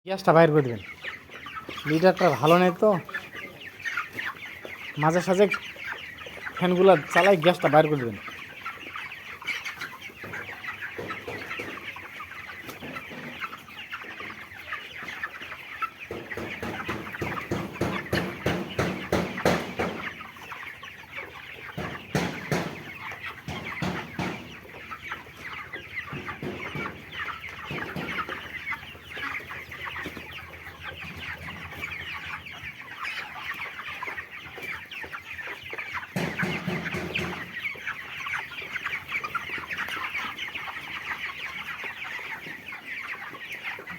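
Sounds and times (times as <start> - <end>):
chickens clucking and chirping: 0.1 - 43.9
rapid clattering knocks: 16.1 - 20.0, 21.8 - 24.6, 36.2 - 37.5.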